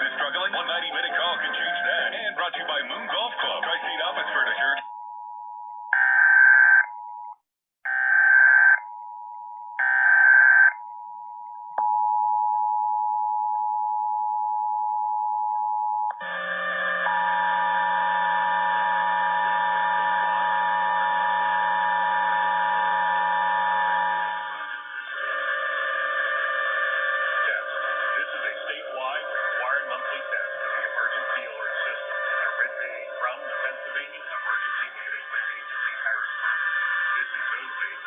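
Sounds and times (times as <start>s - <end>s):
harsh mix of steady tones: 0.0s - 7.1s, 16.1s - 38.0s
two-tone attention signal: 0.7s - 2.4s
digital data bursts: 27.2s - 38.0s.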